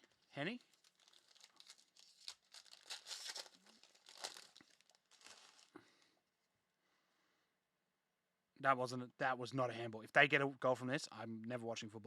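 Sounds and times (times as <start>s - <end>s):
plastic wrappers crinkling and tearing: 0.0s - 5.8s.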